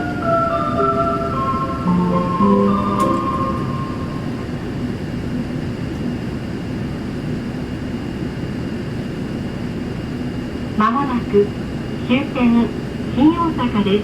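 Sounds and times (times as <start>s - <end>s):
onboard arrival chime: 0.0s - 5.0s
train running rumble inside car: 0.0s - 7.8s.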